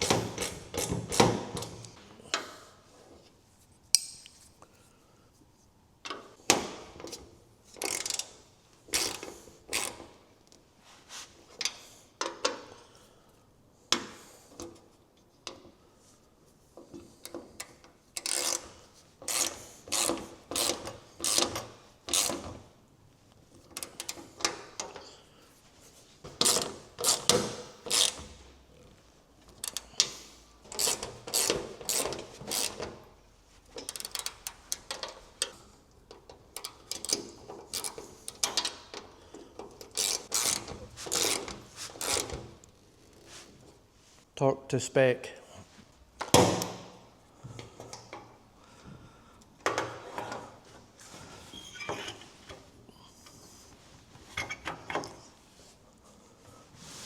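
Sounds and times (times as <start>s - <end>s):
ratchet wrench clicking: 7.8s - 10.0s, 18.2s - 18.7s, 19.3s - 22.4s, 26.4s - 28.2s, 29.6s - 29.9s, 30.7s - 32.9s, 33.8s - 35.5s, 36.6s - 38.9s, 39.8s - 43.1s.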